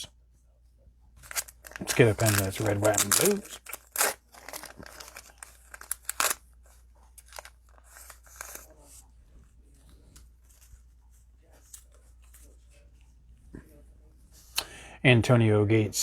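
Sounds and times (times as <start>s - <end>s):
cellophane wrapper crinkling: 1.2s - 8.7s.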